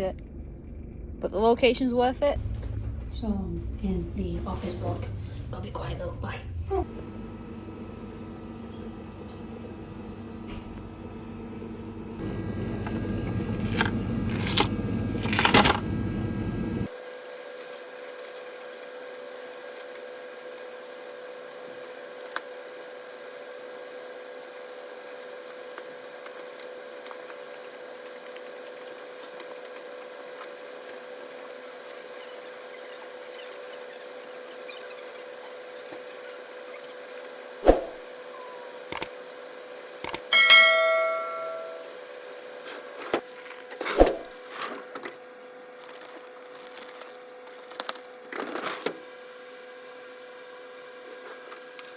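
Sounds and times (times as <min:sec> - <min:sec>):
electrical hum: 0:00.0 - 0:51.9
bright ringing ding: 0:40.3 - 0:42.0.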